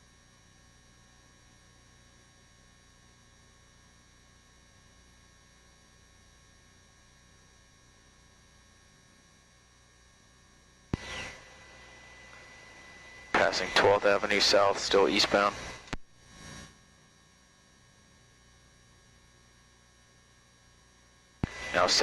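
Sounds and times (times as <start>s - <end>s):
faint electrical hum: 0.0s - 22.0s
radio transmission click and noise: 11.0s - 16.6s, 21.4s - 22.0s
thin steady tones: 11.0s - 16.6s.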